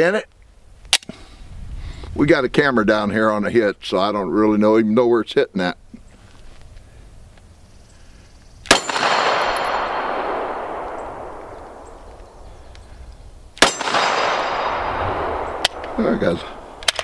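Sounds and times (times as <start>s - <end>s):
pistol shots: 8.7s - 12.4s, 13.6s - 17.0s.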